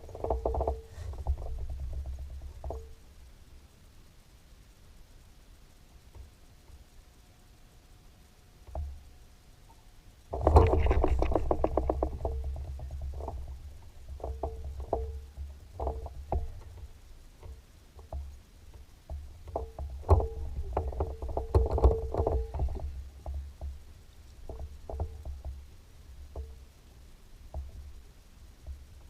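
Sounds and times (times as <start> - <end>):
low steady rumble: 0.0 - 29.0
water knocking against boat hull: 10.4 - 16.9, 19.1 - 23.8.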